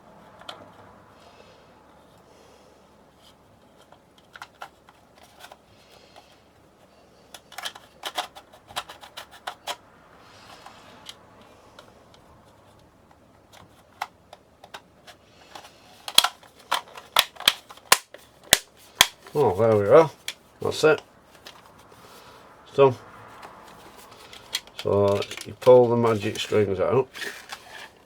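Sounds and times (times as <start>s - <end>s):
hard plastic clicks and taps: 15.5s - 19.4s.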